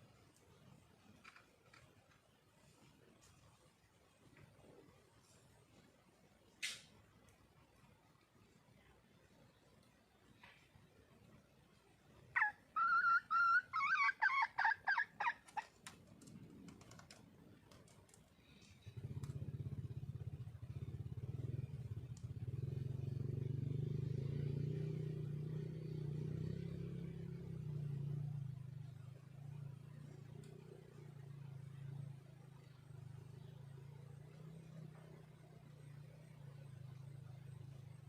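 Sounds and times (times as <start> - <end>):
junglefowl hen clucking call: 12.3 - 15.8
low steady motor hum: 17.7 - 26.2, 27.0 - 38.0.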